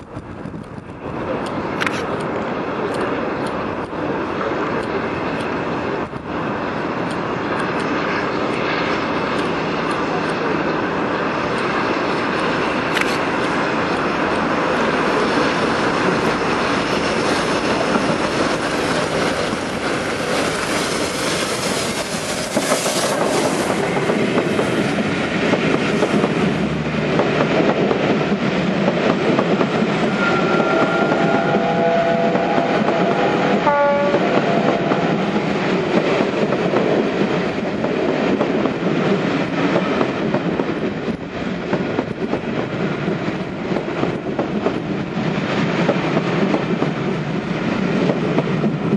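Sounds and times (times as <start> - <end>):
train wheels clattering: 11.2 - 48.9
train horn: 30.0 - 35.2.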